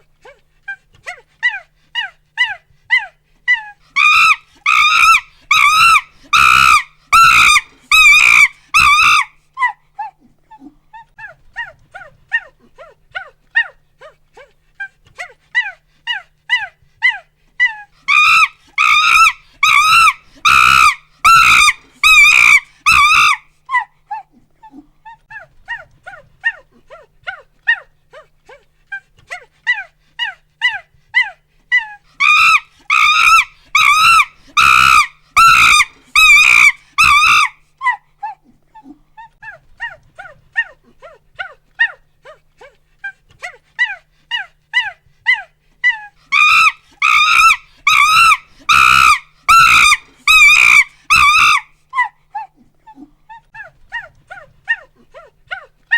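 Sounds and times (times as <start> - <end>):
monkey hooting and screaming: 1.4 - 9.8, 15.6 - 23.9, 29.7 - 38.4, 43.4 - 52.5.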